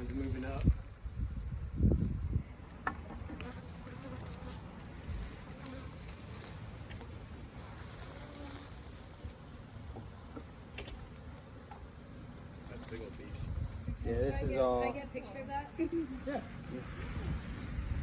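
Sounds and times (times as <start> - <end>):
bees buzzing: 2.7 - 12.6.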